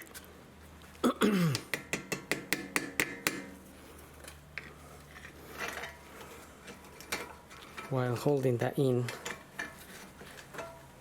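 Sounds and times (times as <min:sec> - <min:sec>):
metal knock: 0:01.7 - 0:03.6.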